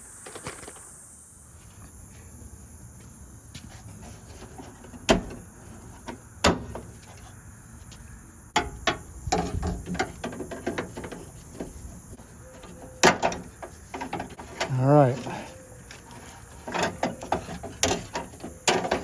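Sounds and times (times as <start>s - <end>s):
metal knocking and rattling: 8.6s - 15.3s, 16.1s - 19.0s.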